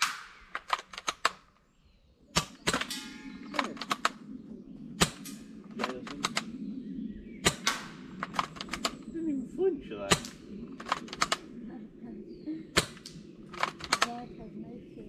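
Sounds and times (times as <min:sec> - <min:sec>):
gun shots: 0:00.0 - 0:01.2, 0:05.0 - 0:06.5, 0:07.4 - 0:09.0, 0:10.0 - 0:11.4, 0:12.7 - 0:14.2.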